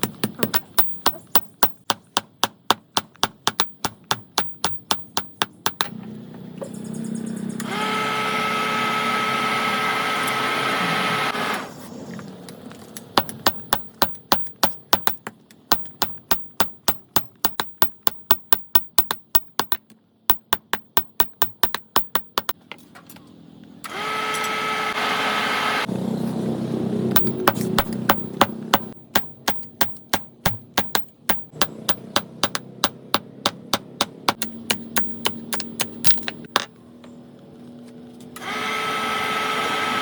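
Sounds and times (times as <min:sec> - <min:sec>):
power tool motor whining: 0:07.5 - 0:11.8, 0:23.8 - 0:25.9, 0:38.2 - 0:40.0.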